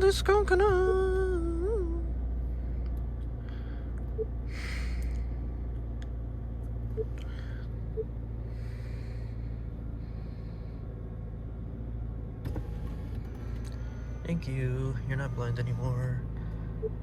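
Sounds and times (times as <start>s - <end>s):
car engine idling with knock: 0.0s - 10.4s, 11.6s - 14.2s.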